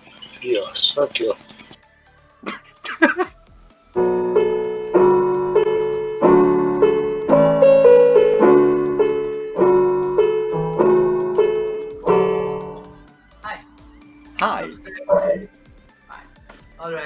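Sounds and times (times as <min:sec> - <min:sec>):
piano chords ringing: 0:04.0 - 0:13.6, 0:14.2 - 0:15.5.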